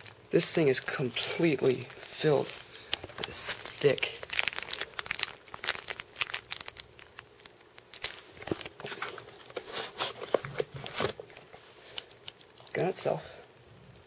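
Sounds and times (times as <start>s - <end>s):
plastic packaging crinkling: 0.0s - 11.2s.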